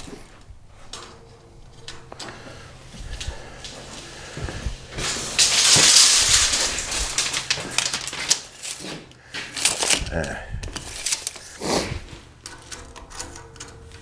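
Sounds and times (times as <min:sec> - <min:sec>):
handling clicks and knocks: 0:00.0 - 0:14.0
tape measure zipping rattle: 0:02.8 - 0:13.5.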